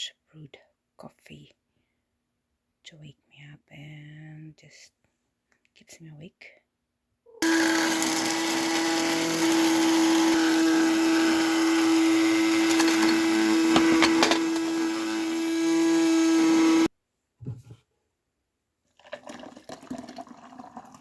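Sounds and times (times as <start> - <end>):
kitchen appliance motor running: 7.4 - 16.9.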